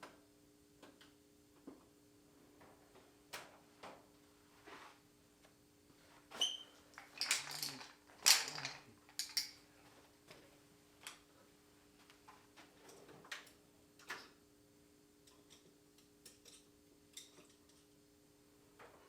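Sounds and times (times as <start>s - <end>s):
metal tools clinking in a toolbox: 6.4s - 9.6s.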